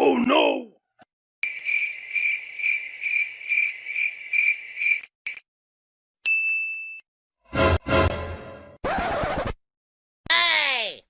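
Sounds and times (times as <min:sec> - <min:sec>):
cricket chirping sound effect: 0:01.4 - 0:05.4.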